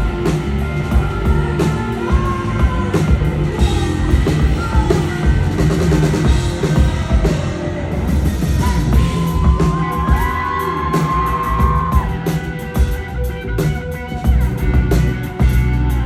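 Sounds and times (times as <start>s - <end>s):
bass guitar: 0.0s - 16.0s
drums: 0.0s - 16.0s
electric guitar: 0.0s - 16.0s.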